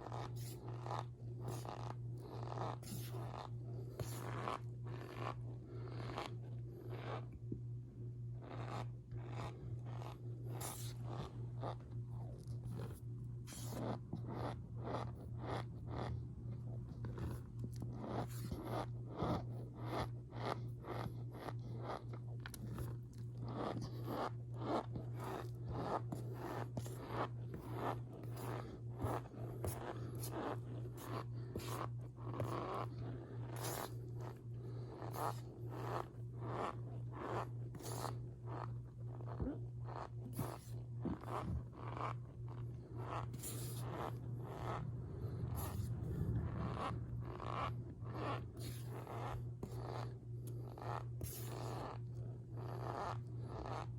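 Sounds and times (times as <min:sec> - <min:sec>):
steady low hum: 0:00.0 - 0:53.9.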